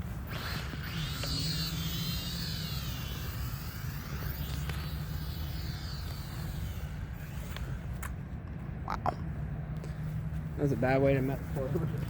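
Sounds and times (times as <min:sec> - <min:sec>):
quadcopter motors whining: 0:00.0 - 0:08.2.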